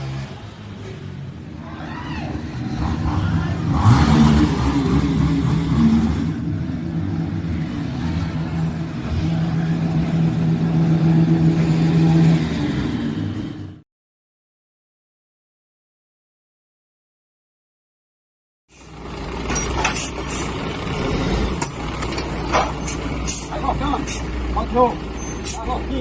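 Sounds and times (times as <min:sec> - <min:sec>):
motorcycle engines revving: 0:00.0 - 0:13.8.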